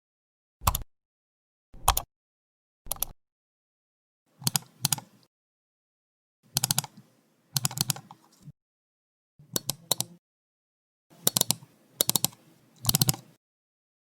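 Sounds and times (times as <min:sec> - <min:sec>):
computer mouse clicking: 0:00.6 - 0:00.8, 0:02.9 - 0:03.1, 0:04.4 - 0:05.2, 0:06.5 - 0:08.5, 0:09.5 - 0:10.2, 0:11.2 - 0:13.4.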